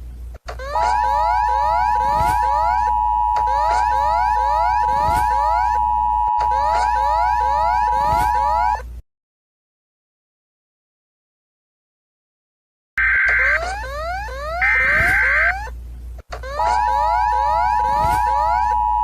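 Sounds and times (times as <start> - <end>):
rising siren sweeps: 0.9 - 8.8, 16.7 - 19.0
steady two-note alarm tone: 1.2 - 8.8, 17.0 - 19.0.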